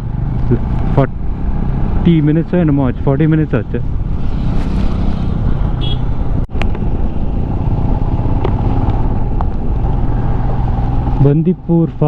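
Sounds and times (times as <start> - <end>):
road noise: 0.0 - 12.0
wind noise: 3.7 - 11.2.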